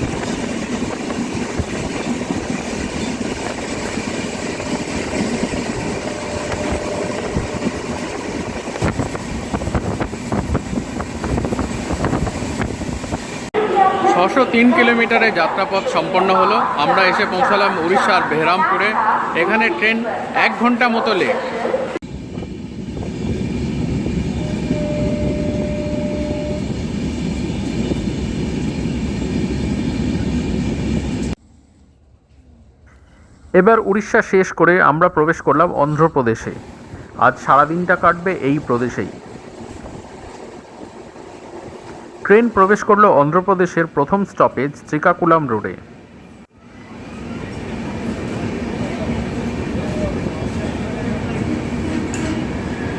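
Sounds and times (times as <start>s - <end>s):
wind noise: 0.0s - 13.5s, 22.0s - 31.2s
moving train rumble: 0.0s - 52.9s.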